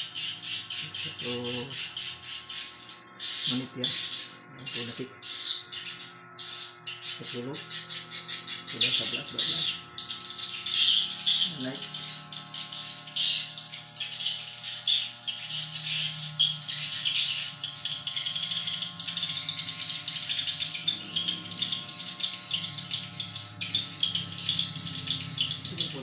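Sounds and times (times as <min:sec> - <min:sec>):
swiftlets twittering: 0:00.0 - 0:26.0.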